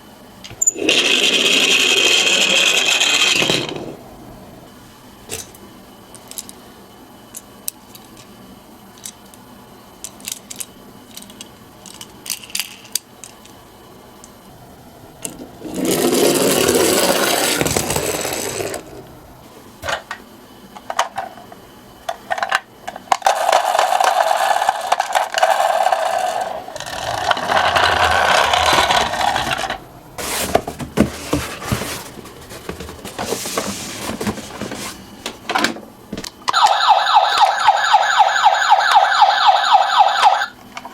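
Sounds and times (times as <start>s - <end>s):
toy cars clicking and knocking: 10.0s - 13.6s, 22.2s - 29.8s
small wheels rattling down slope: 15.6s - 19.0s.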